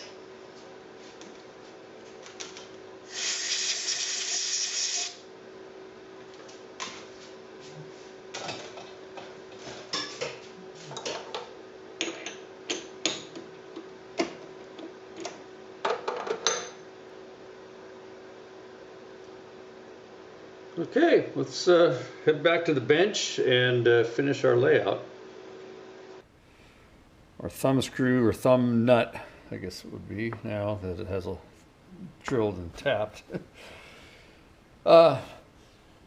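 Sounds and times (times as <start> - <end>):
faint steady hum: 0.0 - 36.0
hiss: 3.1 - 5.2.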